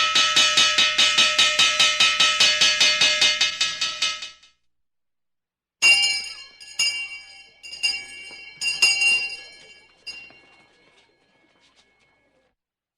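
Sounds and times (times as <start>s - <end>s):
hand bell ringing: 5.8s - 10.9s.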